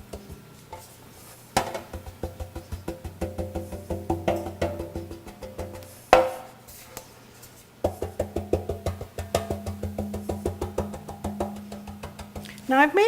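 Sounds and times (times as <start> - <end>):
music with clicking beat: 1.8 - 6.0, 7.9 - 12.7.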